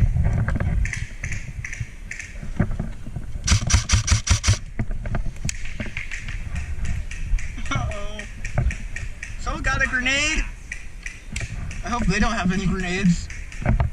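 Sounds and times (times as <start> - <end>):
airsoft gun shots: 3.4 - 4.6.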